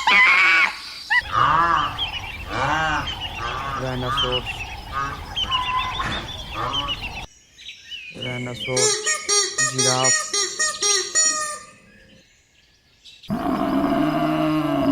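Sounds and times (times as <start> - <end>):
high-pitched animal call: 0.0 - 7.2, 13.3 - 14.9
honking bird calls: 1.2 - 7.3, 8.2 - 12.1.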